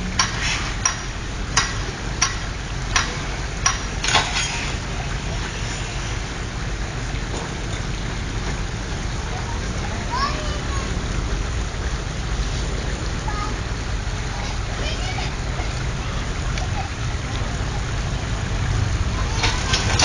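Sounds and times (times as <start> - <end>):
pile-driving hammer blows: 0.0 - 6.2
low engine rumble: 0.0 - 20.0.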